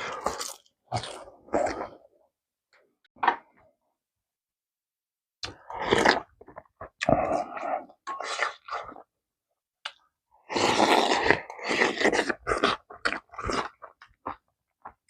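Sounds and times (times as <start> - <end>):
chewing and slurping: 5.4 - 9.1, 9.9 - 15.0.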